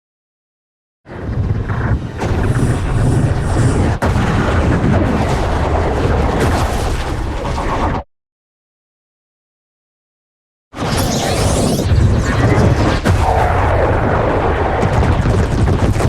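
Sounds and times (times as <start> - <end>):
rumbling blast: 1.1 - 8.0, 10.8 - 16.0
sharp crack: 10.8 - 16.0.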